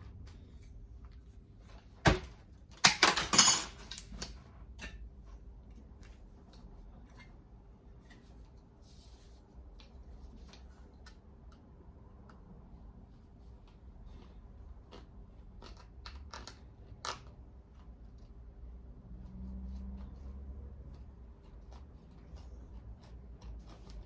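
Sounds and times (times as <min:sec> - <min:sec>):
metal clinking and clanking: 0:02.8 - 0:04.2.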